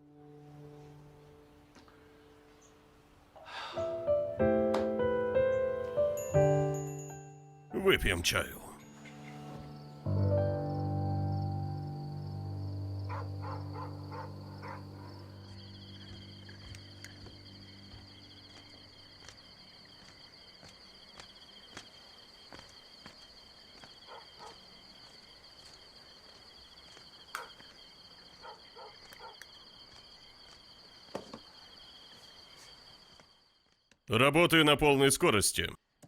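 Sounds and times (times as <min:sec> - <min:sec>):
crickets chirping: 0:08.2 - 0:34.7.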